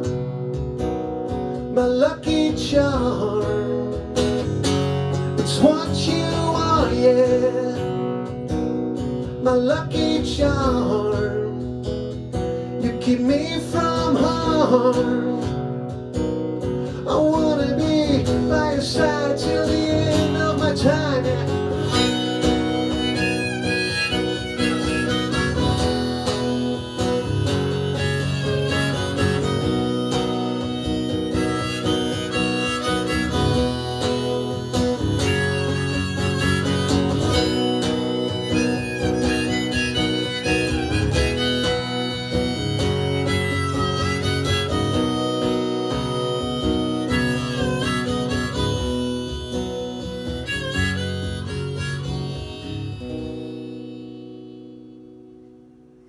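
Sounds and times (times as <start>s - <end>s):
strummed acoustic guitar and band: 0.0s - 56.0s
harmonica solo: 17.6s - 55.3s.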